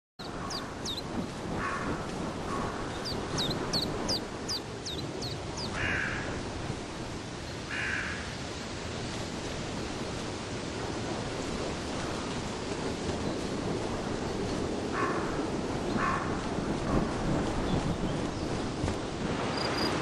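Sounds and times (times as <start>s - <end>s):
harsh raspy bird calls: 0.2s - 1.0s, 2.5s - 6.4s.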